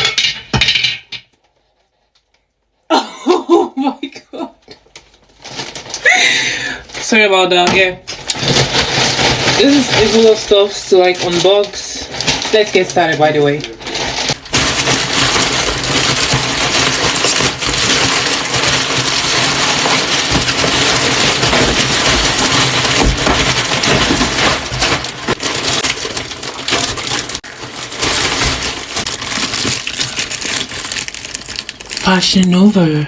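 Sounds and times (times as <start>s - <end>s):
plastic packaging rustling: 4.7s - 32.9s.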